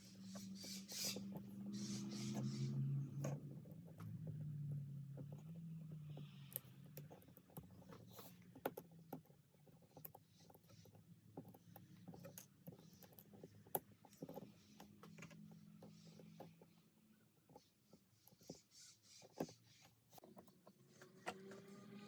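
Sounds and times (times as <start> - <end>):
small tools clicking and tapping: 3.2 - 16.8.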